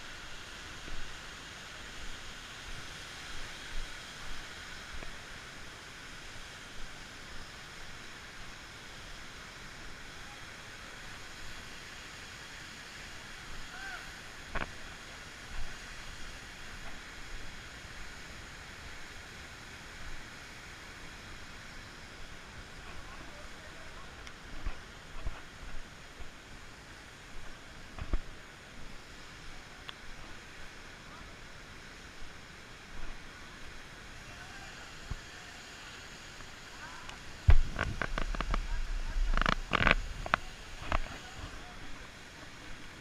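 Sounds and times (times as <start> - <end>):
waterfall roaring: 13.0 - 43.0.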